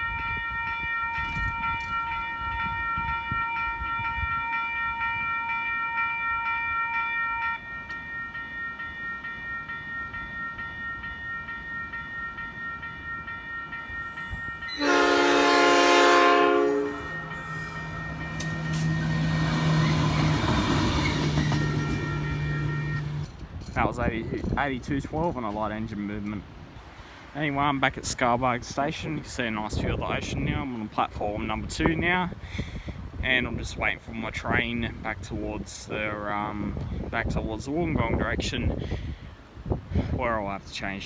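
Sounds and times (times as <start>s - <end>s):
level crossing warning tones: 0.0s - 23.3s
train rolling noise: 0.0s - 32.4s
locomotive engine hum: 4.5s - 23.7s
locomotive horn: 14.7s - 23.2s.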